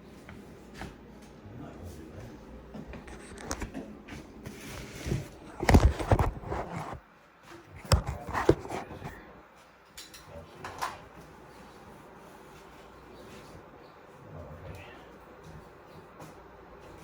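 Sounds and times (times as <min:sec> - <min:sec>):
air conditioner unit being moved: 0:02.8 - 0:09.2, 0:10.0 - 0:13.6.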